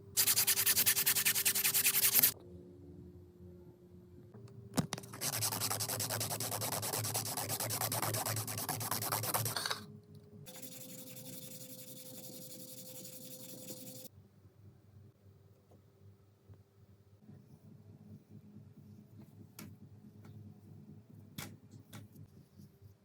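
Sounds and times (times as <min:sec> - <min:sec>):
faint hum: 0:00.0 - 0:22.8
knife blade sanding strokes: 0:00.2 - 0:02.4, 0:05.1 - 0:09.6, 0:10.5 - 0:14.1.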